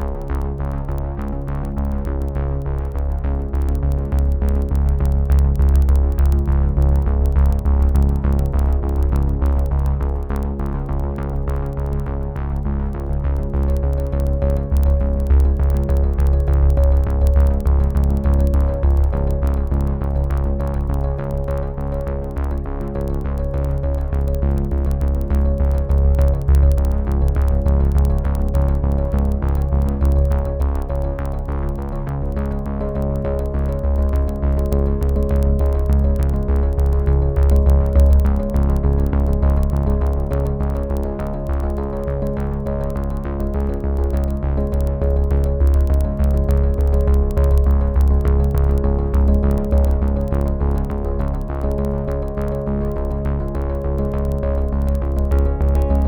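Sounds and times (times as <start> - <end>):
heavy bass line: 0.0 - 56.0
electronic music: 13.1 - 56.0
synthesizer chords: 13.4 - 56.0.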